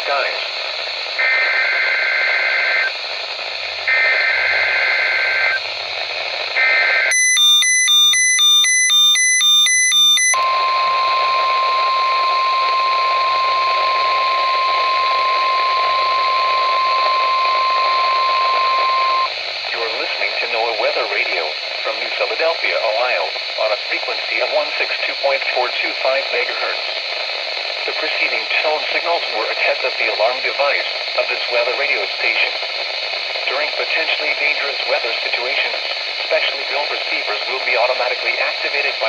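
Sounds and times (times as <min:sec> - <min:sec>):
radio receiver hiss: 0:00.0 - 0:07.2, 0:10.4 - 0:39.0
rapid electronic beeping: 0:04.0 - 0:05.6, 0:07.1 - 0:19.4
digital data screeching: 0:07.1 - 0:19.3
warning alarm tone: 0:07.1 - 0:19.3.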